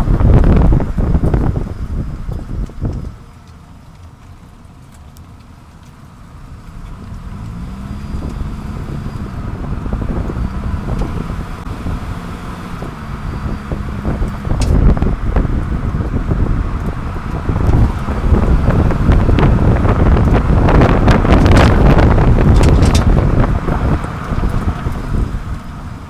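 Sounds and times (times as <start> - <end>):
wind noise: 0.0 - 3.4, 6.4 - 26.0
road rumble: 0.0 - 26.0
low hum rising in pitch: 6.3 - 25.9.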